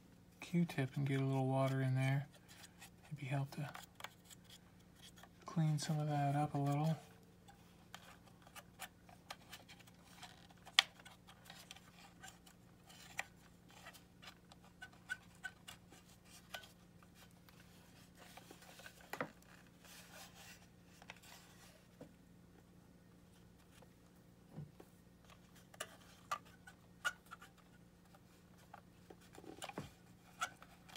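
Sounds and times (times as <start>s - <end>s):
cotton swab scratching plastic: 7.9s - 19.0s.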